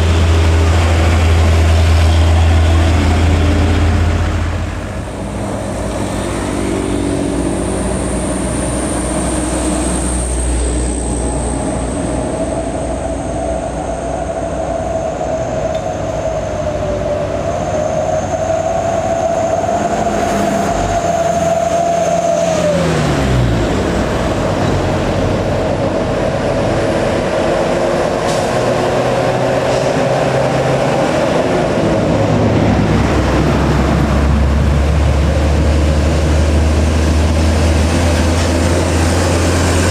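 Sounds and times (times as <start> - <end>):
high whine: 0.0 - 28.3
diesel truck engines roaring: 0.0 - 39.9.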